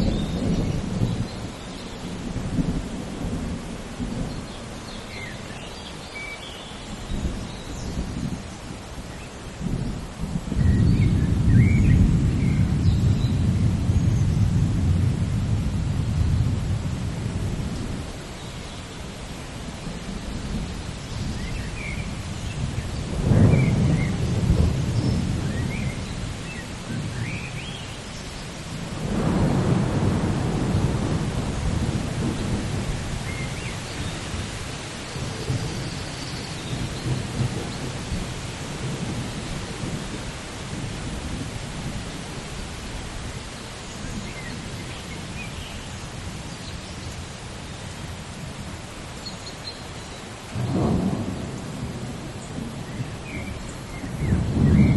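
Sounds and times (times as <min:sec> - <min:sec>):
rolling thunder: 0:00.0 - 0:01.5, 0:09.6 - 0:18.1, 0:19.8 - 0:27.8, 0:28.7 - 0:42.1, 0:50.5 - 0:54.9
steady rain: 0:00.0 - 0:54.9.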